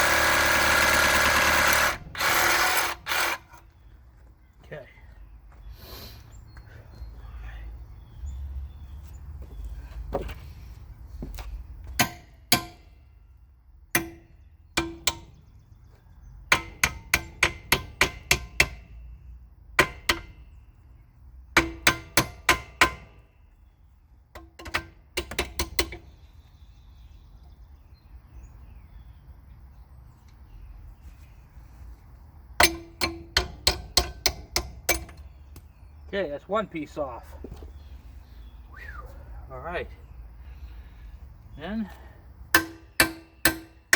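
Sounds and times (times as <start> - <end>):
hammer striking metal: 12.0 - 13.0, 14.0 - 15.4, 16.5 - 18.9, 19.8 - 20.4, 21.6 - 23.1, 32.6 - 35.2, 42.5 - 43.9.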